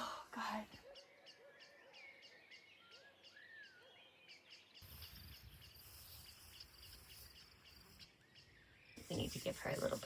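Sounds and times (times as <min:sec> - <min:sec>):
whistled bird calls: 0:00.8 - 0:09.1
high insect chirps: 0:04.8 - 0:10.0.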